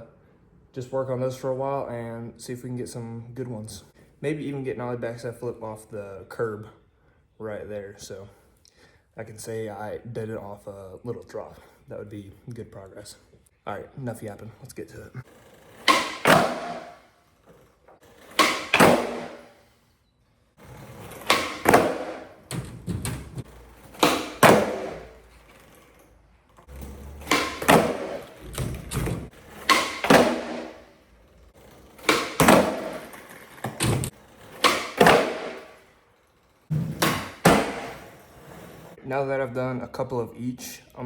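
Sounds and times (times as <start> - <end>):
skateboard wheels rolling: 15.1 - 19.8, 20.6 - 39.0
skateboard landing clacks: 15.8 - 17.1, 18.2 - 19.6, 20.9 - 25.9, 26.6 - 31.0, 31.6 - 35.9, 36.7 - 38.3
skateboard tail pops: 15.8 - 17.1, 18.3 - 19.6, 21.1 - 25.2, 27.2 - 30.9, 32.0 - 35.8, 36.7 - 38.2.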